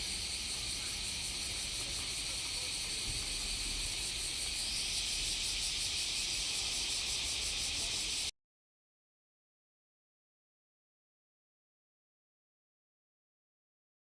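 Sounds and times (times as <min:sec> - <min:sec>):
cicadas buzzing: 0:00.0 - 0:08.3.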